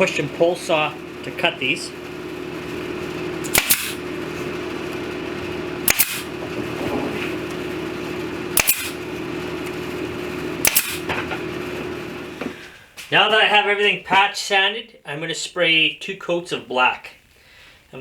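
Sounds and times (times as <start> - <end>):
steady hum: 0.0 - 12.6
nail gun double click: 3.5 - 4.0, 5.9 - 6.3, 8.6 - 9.0, 10.6 - 11.1.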